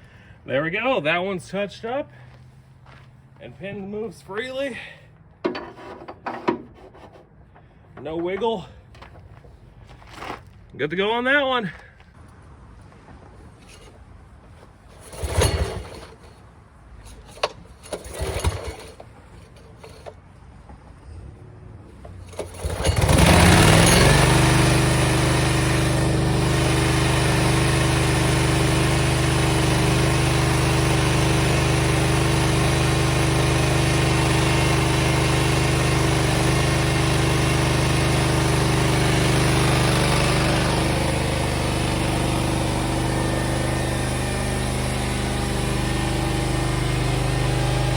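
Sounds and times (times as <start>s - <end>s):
knocks and clanks: 5.4s - 9.2s
small petrol engine running: 14.9s - 16.4s, 17.0s - 20.2s, 21.9s - 47.9s.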